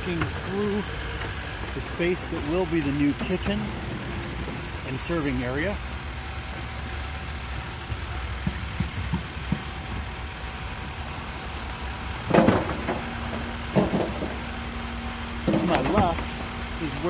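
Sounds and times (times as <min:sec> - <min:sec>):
machine drone: 0:00.0 - 0:17.0
clattering bangs: 0:12.2 - 0:14.6, 0:15.4 - 0:16.4.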